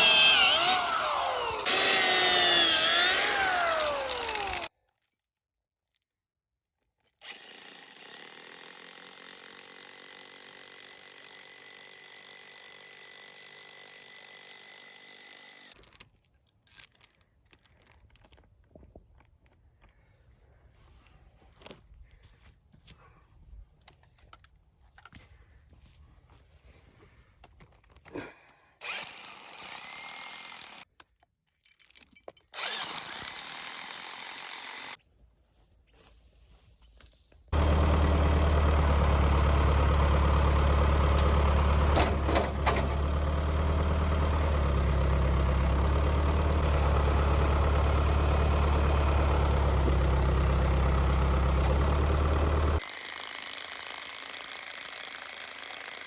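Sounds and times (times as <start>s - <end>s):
work sounds: 0.0s - 6.1s, 6.7s - 56.0s
heavy engine running: 37.6s - 52.8s.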